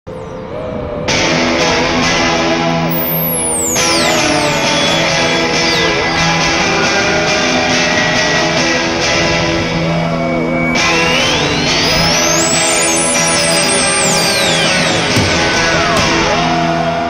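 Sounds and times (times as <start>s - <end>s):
rock music with electric guitar: 1.1s - 17.0s
high rising sweep: 2.9s - 6.0s, 10.2s - 15.9s.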